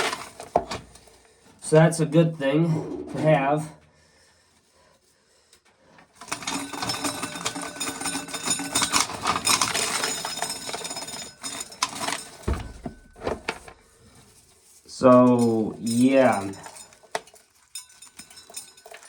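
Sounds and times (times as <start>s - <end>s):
corn sheller rattling kernels: 0.0s - 1.2s, 6.2s - 13.6s, 14.6s - 19.0s
low thump: 12.5s - 13.6s.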